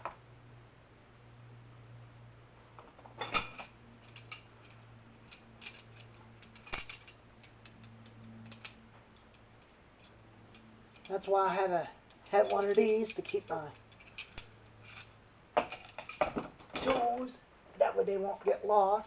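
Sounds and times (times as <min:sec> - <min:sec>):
steady low hum: 0:00.0 - 0:18.1
metal tools clanking: 0:03.0 - 0:11.2, 0:12.0 - 0:17.3
metal hand tools clinking: 0:03.2 - 0:11.3, 0:12.0 - 0:17.3.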